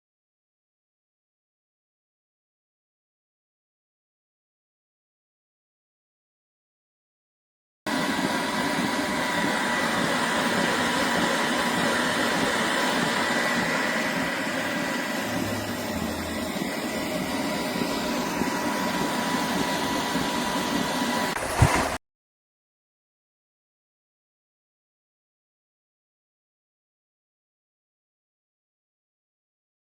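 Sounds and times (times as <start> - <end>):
air compressor running: 7.9 - 22.0.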